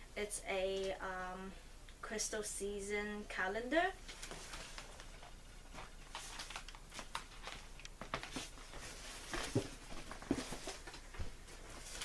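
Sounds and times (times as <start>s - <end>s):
packaging rustling: 4.0s - 12.0s.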